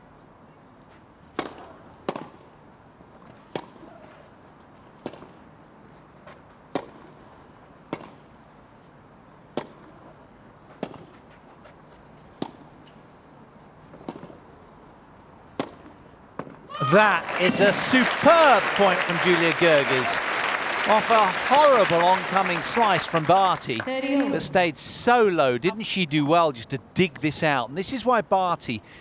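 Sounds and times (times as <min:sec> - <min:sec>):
faint crowd hum: 0:16.7 - 0:26.7.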